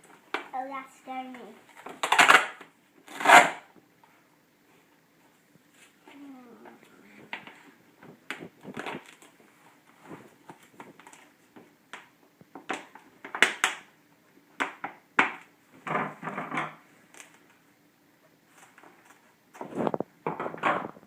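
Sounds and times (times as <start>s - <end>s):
duct tape ripping: 1.8s - 3.7s.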